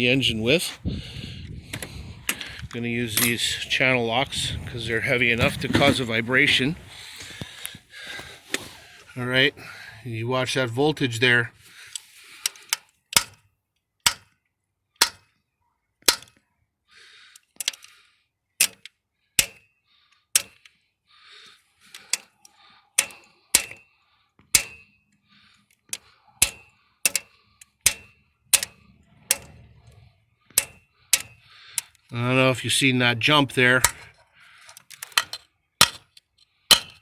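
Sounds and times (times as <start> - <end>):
pliers knocking on metal engine block: 27.8 - 28.7.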